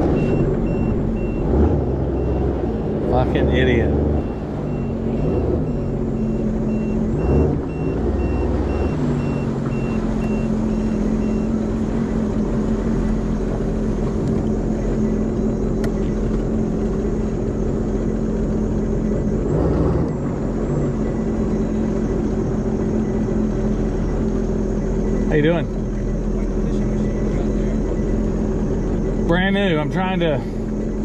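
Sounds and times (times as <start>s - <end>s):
high electronic beep: 0.1s - 1.5s, 2.2s - 11.7s
jet ski engine idling: 3.0s - 19.5s, 20.2s - 31.0s.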